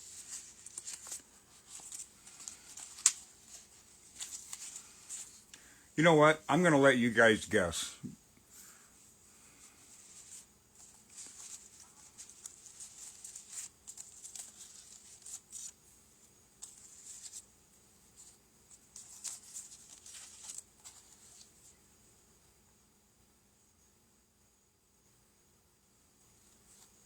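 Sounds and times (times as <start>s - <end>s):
packaging rustling and scratching: 0.0s - 5.4s, 9.9s - 15.8s, 18.2s - 21.5s.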